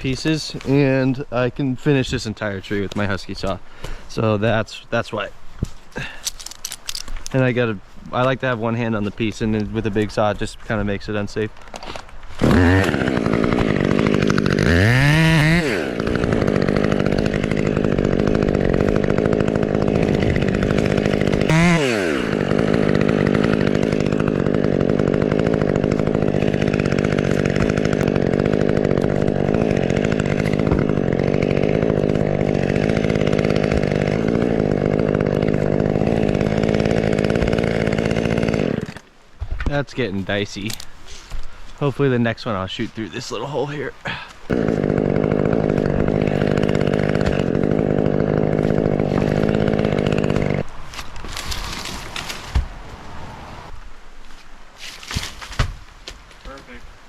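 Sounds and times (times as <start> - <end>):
chainsaw revving and cutting: 12.3 - 39.1, 44.5 - 52.7.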